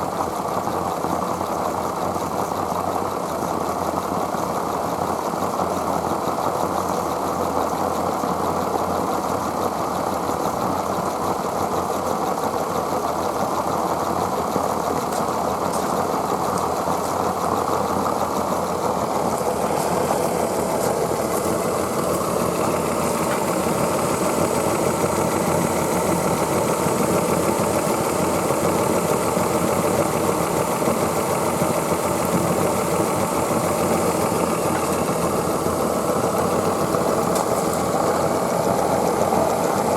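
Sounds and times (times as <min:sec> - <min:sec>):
steam locomotive running: 0:12.9 - 0:39.9.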